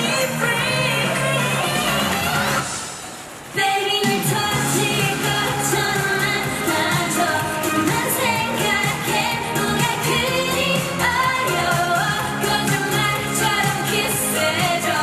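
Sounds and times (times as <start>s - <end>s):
pop song vocals: 0.0s - 15.0s
steady beat: 4.1s - 15.0s.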